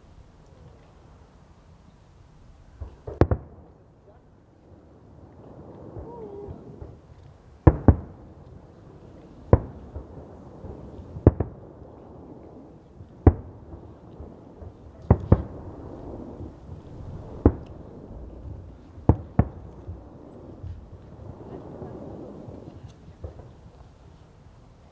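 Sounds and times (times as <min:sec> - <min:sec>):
fireworks bangs: 0:05.3 - 0:24.9.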